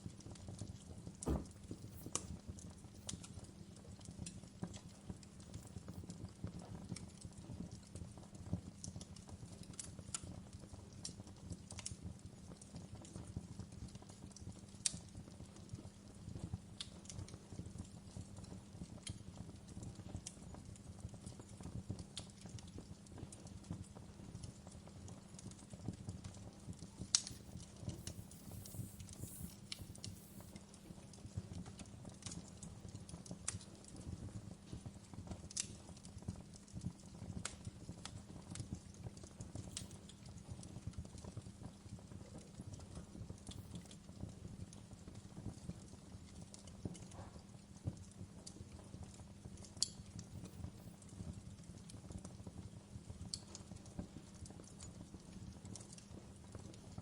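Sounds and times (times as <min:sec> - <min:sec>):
wood fire crackling: 0:00.0 - 0:57.0.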